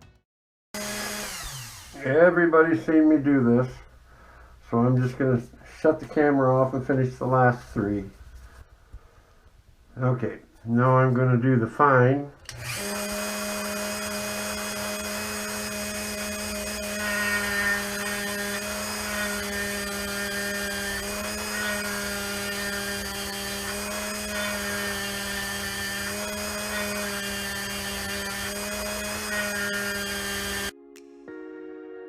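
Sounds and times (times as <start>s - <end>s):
power tool high whine: 0.8s - 2.2s, 12.5s - 30.7s.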